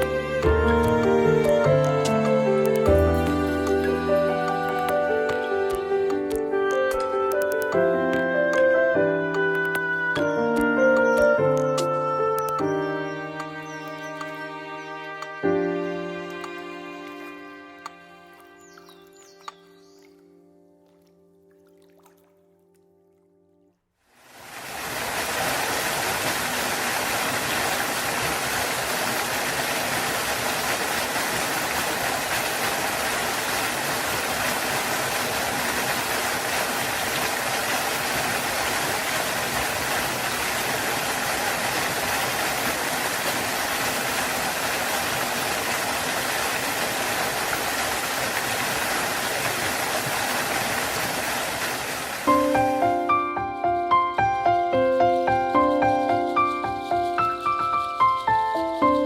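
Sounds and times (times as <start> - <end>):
waterfall roaring: 24.2 - 53.0.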